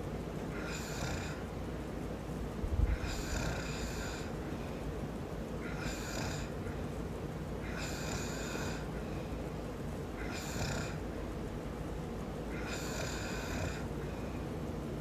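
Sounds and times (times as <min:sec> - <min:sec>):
man snoring: 0:00.5 - 0:01.4, 0:02.9 - 0:04.4, 0:05.6 - 0:06.6, 0:07.6 - 0:09.0, 0:10.2 - 0:11.0, 0:12.5 - 0:14.0.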